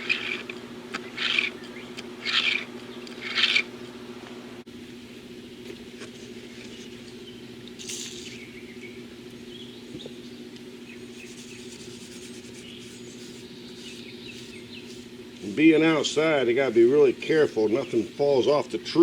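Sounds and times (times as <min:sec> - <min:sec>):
rustling scrape: 0:00.0 - 0:03.7, 0:11.1 - 0:15.1
birds chirping: 0:00.0 - 0:04.6, 0:06.4 - 0:19.0
steady low hum: 0:00.0 - 0:19.0.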